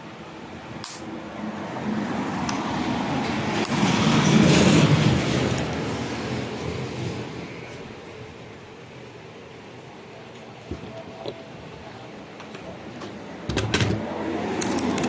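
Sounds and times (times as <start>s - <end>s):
road vehicle passing: 1.2s - 8.3s.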